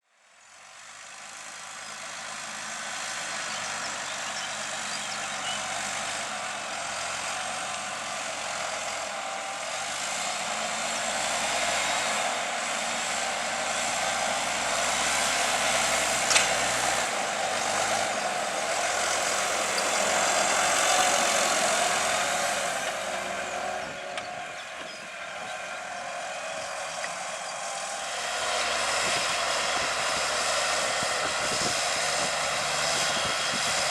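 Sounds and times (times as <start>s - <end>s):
tractor diesel engine under load: 0.0s - 33.9s.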